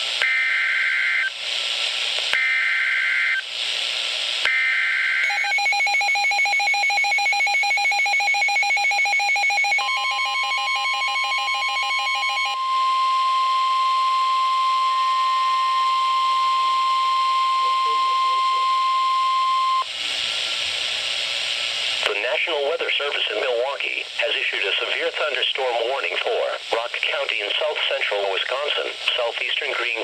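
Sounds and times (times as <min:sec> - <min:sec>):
radio hiss: 0:00.0 - 0:04.5, 0:16.1 - 0:30.0
steady high alarm tone: 0:04.5 - 0:19.8.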